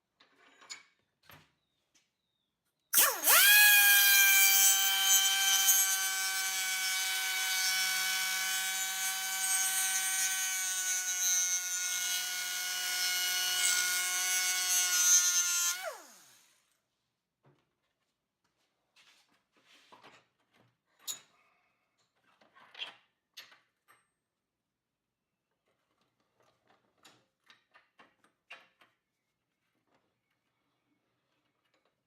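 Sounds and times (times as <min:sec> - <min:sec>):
die grinder whining: 0:03.0 - 0:16.5.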